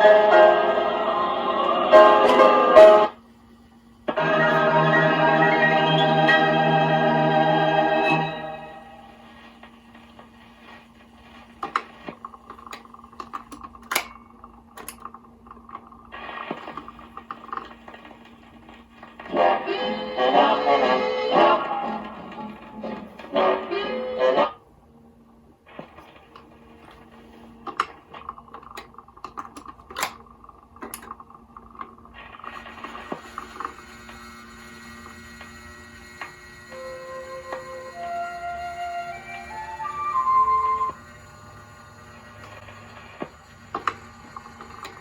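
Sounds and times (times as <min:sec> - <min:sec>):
turntable low hum: 0:00.0 - 0:45.0
record changer clicks and clunks: 0:11.4 - 0:19.4, 0:25.7 - 0:33.8
turntable motor hum: 0:25.5 - 0:45.0.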